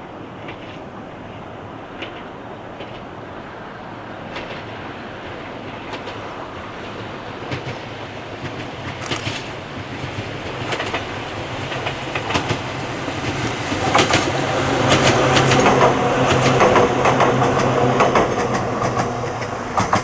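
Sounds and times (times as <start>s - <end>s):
train wheels clattering: 0.2s - 20.0s
train motor hum: 6.0s - 20.0s.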